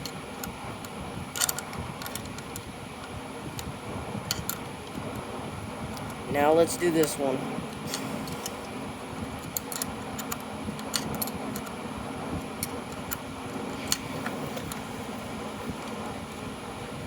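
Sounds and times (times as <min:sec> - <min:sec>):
electric fan running: 0:00.0 - 0:17.0
hand tools clicking and tapping: 0:01.4 - 0:02.7, 0:09.4 - 0:11.8.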